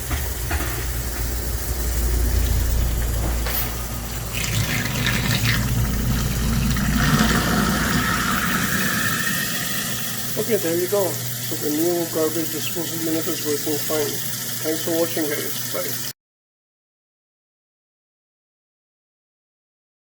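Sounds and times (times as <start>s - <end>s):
garbage disposal motor hum: 0.0s - 16.1s
water rushing: 3.9s - 16.1s.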